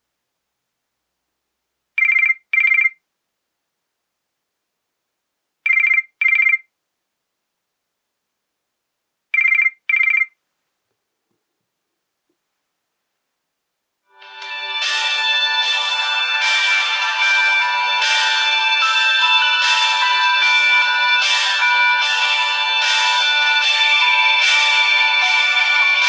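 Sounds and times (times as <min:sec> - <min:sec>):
telephone bell ringtone: 0:02.0 - 0:03.0, 0:05.7 - 0:06.6, 0:09.4 - 0:10.3, 0:14.2 - 0:26.0.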